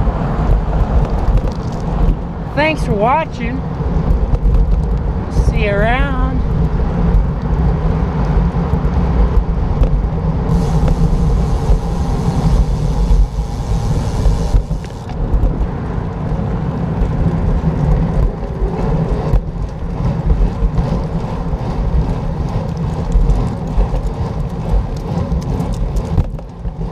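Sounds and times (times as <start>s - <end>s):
bicycle road noise: 0.0s - 26.9s
wind on microphone: 0.0s - 26.9s.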